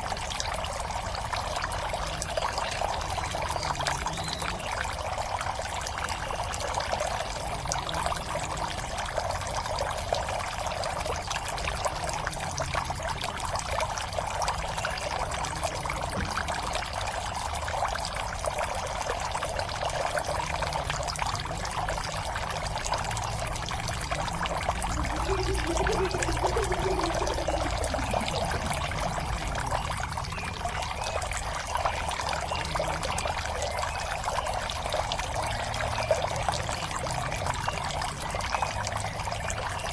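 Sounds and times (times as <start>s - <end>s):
water pouring into pond: 0.0s - 39.9s
faint low wavering rumble: 23.2s - 30.7s.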